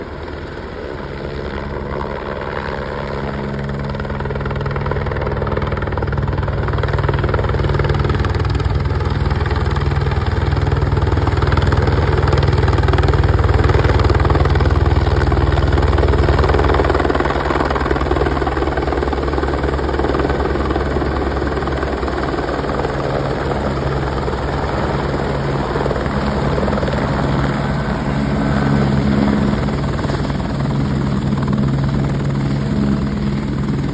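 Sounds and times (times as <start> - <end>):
helicopter rotor beating: 0.0 - 33.9.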